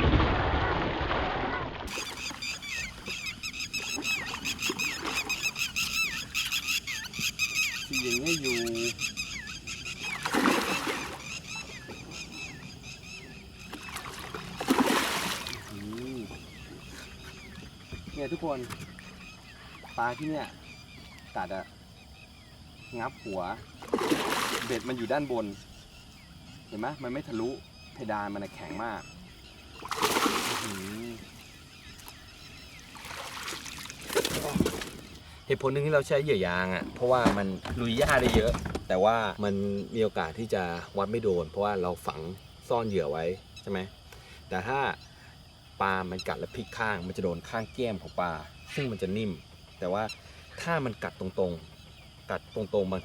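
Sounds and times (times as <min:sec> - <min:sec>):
water splashing and handling: 0:01.8 - 0:06.5, 0:10.0 - 0:12.0, 0:13.6 - 0:19.1, 0:23.8 - 0:25.1, 0:29.8 - 0:32.2, 0:32.8 - 0:35.2, 0:36.8 - 0:39.0
bird calling high note: 0:01.9 - 0:13.8
faint bird chirps: 0:01.9 - 0:53.0.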